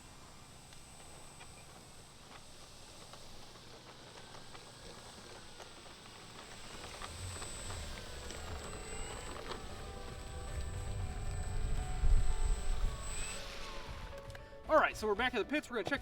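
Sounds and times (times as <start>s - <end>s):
distant electric motor whine: 0.0s - 14.9s
low rumble: 7.1s - 14.6s.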